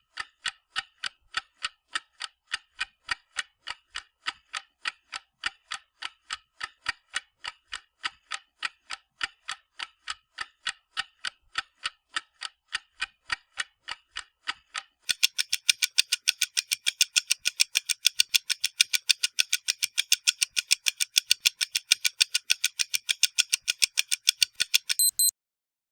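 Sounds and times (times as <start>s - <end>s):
clock timer ticking: 15.1s - 25.3s
alarm tone: 25.0s - 25.3s.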